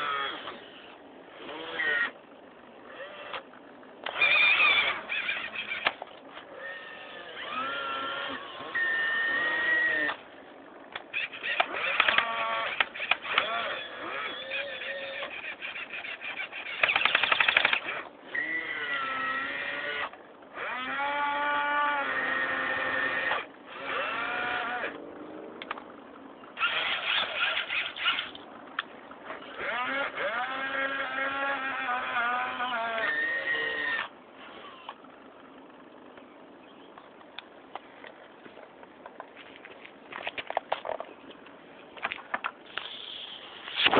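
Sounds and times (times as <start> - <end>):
electric motors whining: 0.0 - 2.2, 2.8 - 25.8, 26.6 - 36.1
rattling gear clicks: 10.9 - 18.2, 36.9 - 43.0.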